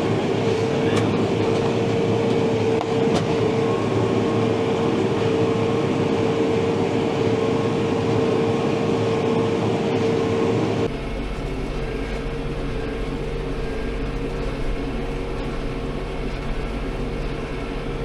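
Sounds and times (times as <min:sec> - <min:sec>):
tractor engine drone: 0:00.0 - 0:18.0.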